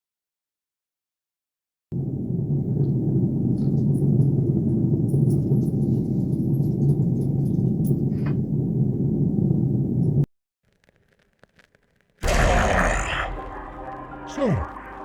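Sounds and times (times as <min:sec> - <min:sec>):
low rumble: 0:01.9 - 0:10.3.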